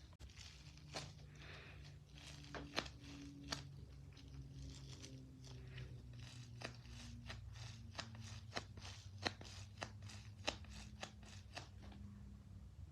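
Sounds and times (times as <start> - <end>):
squishy toy crinkling: 0.1 - 9.6.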